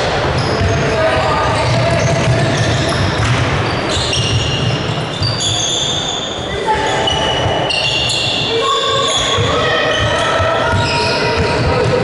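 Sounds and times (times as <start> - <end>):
basketball bouncing on court: 0.0 - 5.6, 9.2 - 12.0
sneakers squeaking: 0.0 - 12.0
spectators' voices: 5.0 - 12.0.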